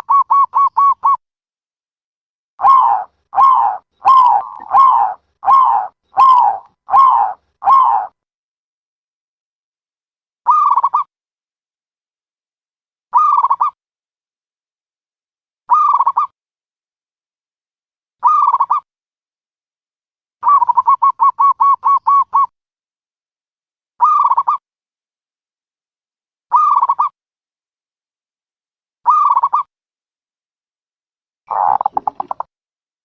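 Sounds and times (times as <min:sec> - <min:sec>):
dove calls: 0:00.0 - 0:01.2, 0:02.6 - 0:08.2, 0:20.4 - 0:22.5, 0:31.5 - 0:32.5.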